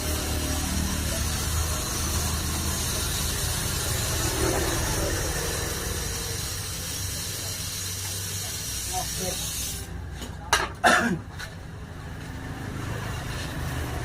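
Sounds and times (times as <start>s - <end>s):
small motor humming: 0.0s - 9.9s
even hiss: 0.1s - 10.0s.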